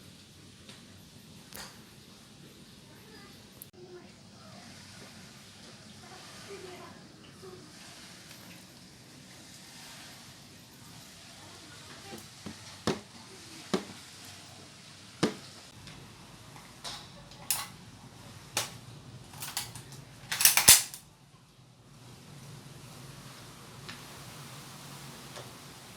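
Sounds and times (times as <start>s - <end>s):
metallic clicks and clacks of rifle: 17.5s - 17.7s, 18.6s - 18.8s, 19.4s - 21.0s.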